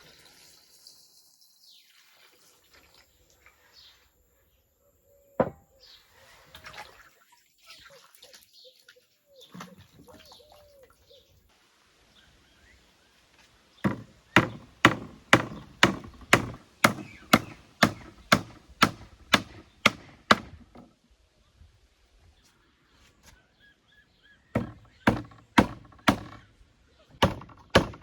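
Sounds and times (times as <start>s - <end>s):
knife chopping on wooden board: 5.4s - 5.6s, 13.8s - 20.6s, 24.6s - 26.4s
faint bird calls: 7.6s - 11.5s.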